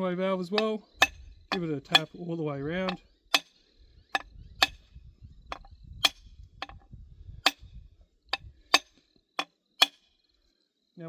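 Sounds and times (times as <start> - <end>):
hammer tapping metal: 0.6 - 2.2, 2.8 - 3.5, 4.2 - 4.8, 5.5 - 6.8.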